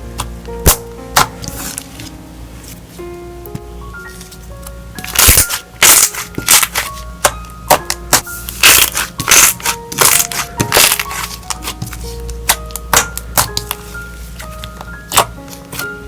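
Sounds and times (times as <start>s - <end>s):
light background music: 0.0s - 16.0s
slime air pockets popping: 5.0s - 13.8s, 14.6s - 15.8s.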